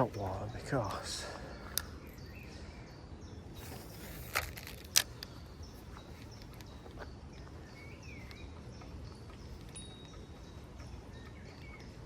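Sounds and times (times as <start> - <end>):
fishing tackle clicks: 4.0 - 5.4.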